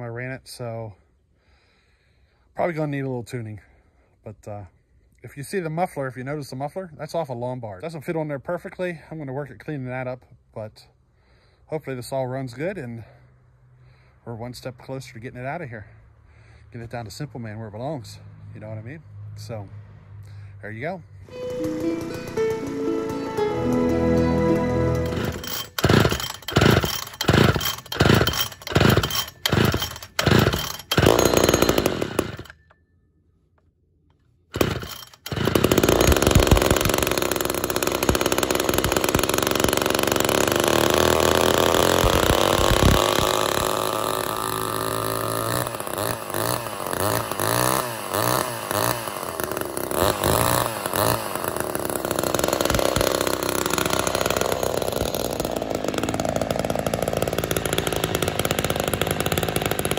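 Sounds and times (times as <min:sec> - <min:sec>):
music with steady beat: 0:21.3 - 0:25.6
chainsaw running: 0:21.3 - 0:32.6, 0:34.6 - 0:59.9.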